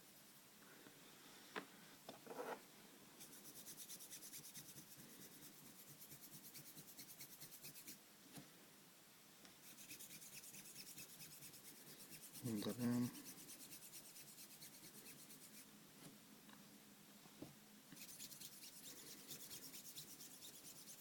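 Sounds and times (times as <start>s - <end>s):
cotton swab scrubbing heatsink: 3.2s - 8.0s, 9.6s - 15.7s, 17.9s - 21.0s.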